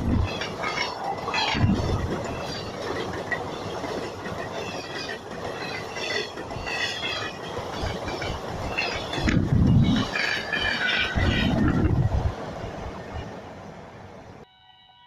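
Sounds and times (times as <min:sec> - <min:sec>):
train wheels rumbling on track: 0:00.0 - 0:14.4.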